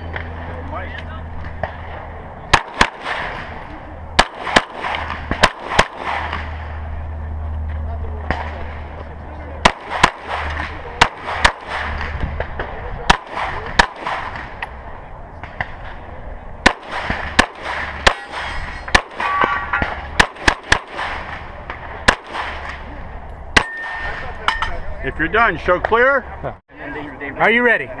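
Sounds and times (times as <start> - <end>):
pistol shots: 2.5 - 3.6, 4.2 - 6.7, 9.6 - 14.7, 16.6 - 22.9, 23.6 - 24.3.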